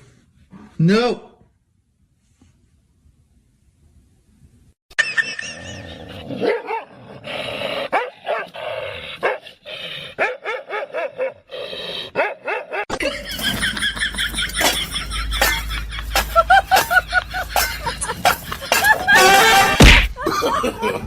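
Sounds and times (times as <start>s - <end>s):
dog barking and yipping: 6.4s - 6.9s, 7.9s - 8.5s, 10.2s - 11.4s, 12.2s - 12.9s.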